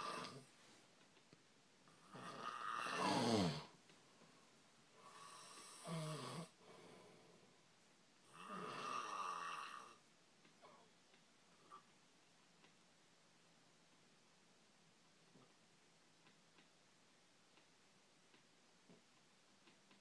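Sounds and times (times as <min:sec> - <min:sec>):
man snoring loudly: 0:02.0 - 0:03.7, 0:05.0 - 0:06.6, 0:08.3 - 0:10.0.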